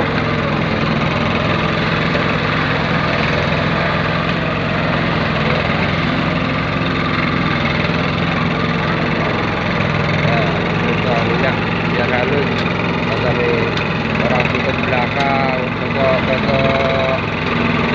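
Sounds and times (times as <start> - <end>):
machine engine running steadily: 0.0 - 17.9.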